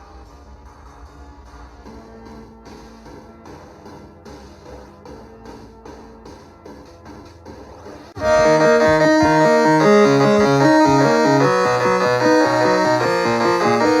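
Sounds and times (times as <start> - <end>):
melodic music with held chords: 8.2 - 14.0
stepping bass line: 8.2 - 14.0.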